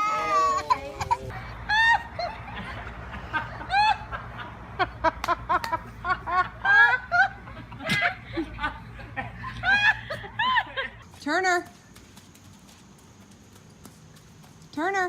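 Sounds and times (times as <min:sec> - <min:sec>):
high-pitched laughter: 0:00.0 - 0:11.0.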